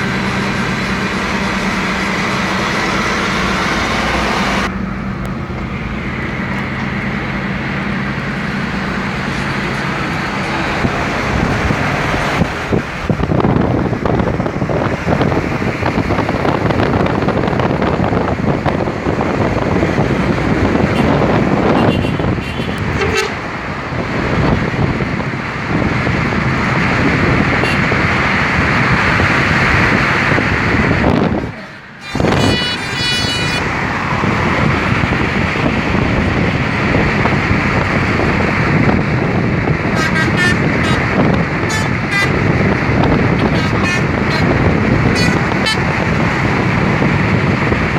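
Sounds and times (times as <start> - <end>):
heavy wind: 0.0 - 47.9
road noise: 0.0 - 47.9
bus musical horn: 20.8 - 23.5, 27.5 - 28.0, 31.5 - 33.8, 39.8 - 46.2.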